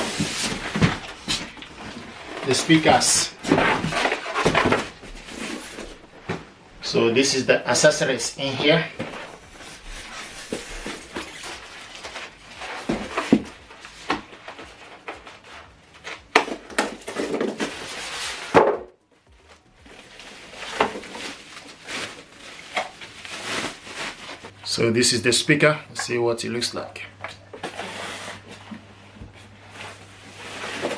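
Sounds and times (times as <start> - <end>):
packaging rustling: 19.6 - 24.6.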